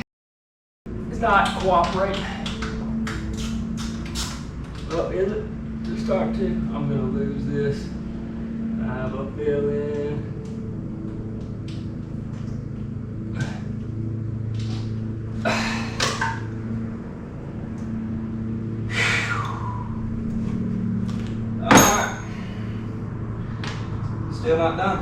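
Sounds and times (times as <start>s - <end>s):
steady low hum: 0.9s - 25.0s
metal tools clanking: 21.6s - 22.7s.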